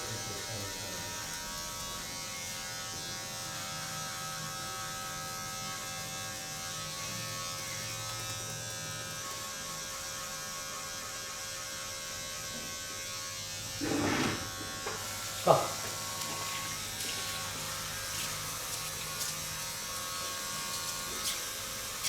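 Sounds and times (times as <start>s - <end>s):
electric buzz of handheld device: 0.0s - 22.0s
low rubbing: 13.8s - 15.0s.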